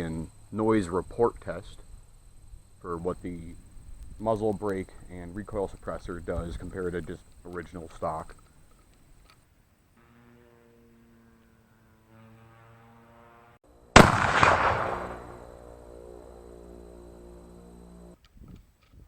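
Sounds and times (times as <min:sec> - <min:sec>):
steady low hum: 0:00.0 - 0:18.7
rifle shot: 0:14.0 - 0:15.6.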